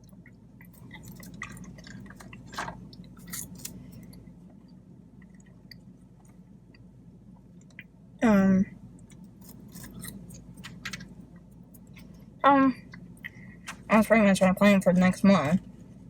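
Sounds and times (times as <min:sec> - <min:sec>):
person chewing food: 0:00.0 - 0:08.0, 0:09.0 - 0:13.9.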